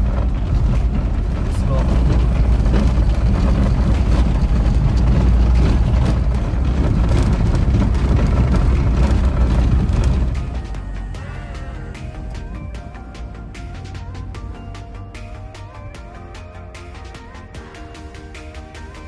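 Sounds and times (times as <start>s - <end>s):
road noise: 0.0s - 19.0s
vehicle engine rumble: 0.0s - 19.0s.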